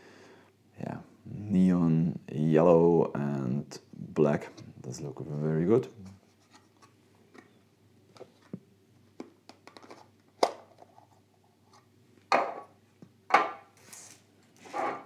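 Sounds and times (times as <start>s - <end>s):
plastic packaging scraping rustles: 13.8s - 15.0s.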